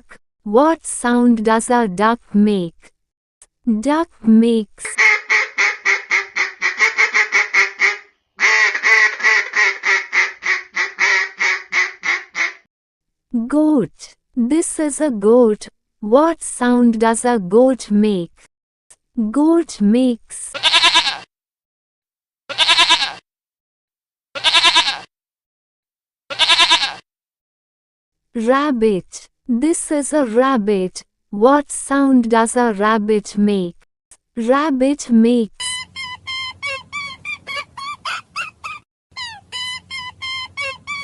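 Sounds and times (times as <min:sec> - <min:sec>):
duck quacking: 0:05.0 - 0:12.7
goat bleating: 0:20.5 - 0:21.3, 0:22.5 - 0:23.2, 0:24.4 - 0:25.1, 0:26.3 - 0:27.0.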